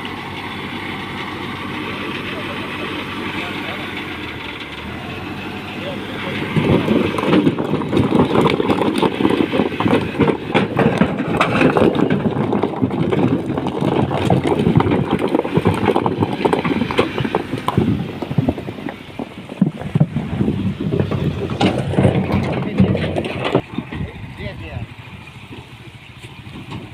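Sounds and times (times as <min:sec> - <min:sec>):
dense irregular clatter: 0:00.0 - 0:26.9
tractor diesel engine running: 0:00.0 - 0:26.9.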